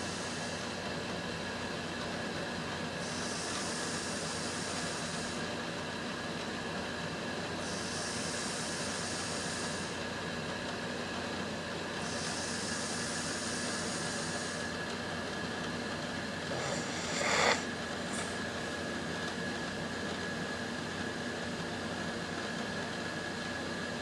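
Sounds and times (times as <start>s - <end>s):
steady background hum: 0.0s - 24.0s
person snoring: 16.5s - 17.7s.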